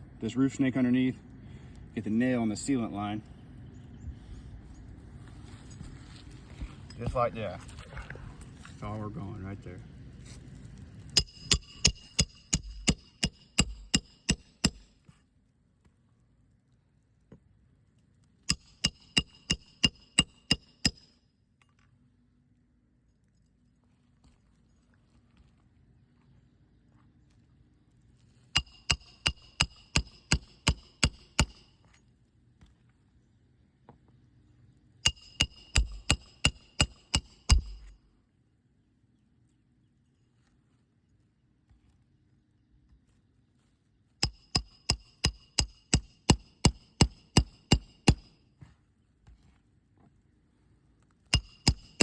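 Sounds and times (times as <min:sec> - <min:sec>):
hammer blows with metallic ring: 0:11.2 - 0:14.9, 0:18.5 - 0:21.2, 0:28.6 - 0:31.8, 0:35.1 - 0:38.0, 0:44.2 - 0:48.4, 0:51.4 - 0:52.0.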